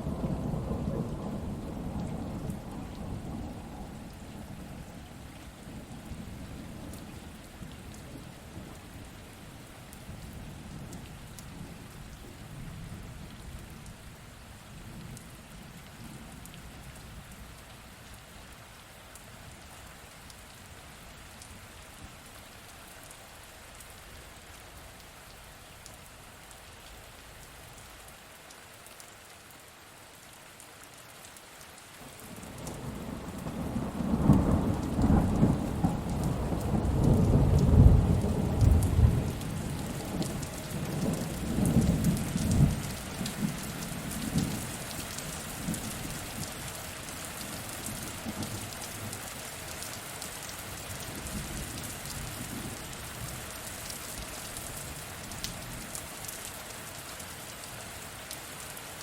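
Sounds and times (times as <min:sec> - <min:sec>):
thunder rumbling: 0:00.0 - 0:05.2, 0:32.5 - 0:44.8
steady rain falling: 0:00.0 - 0:59.0.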